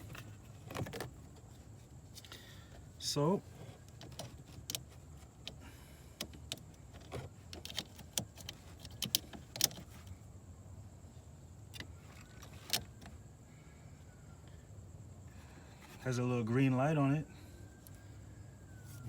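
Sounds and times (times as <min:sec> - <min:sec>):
clicks and knocks of handling: 0:03.7 - 0:05.6, 0:06.2 - 0:10.1.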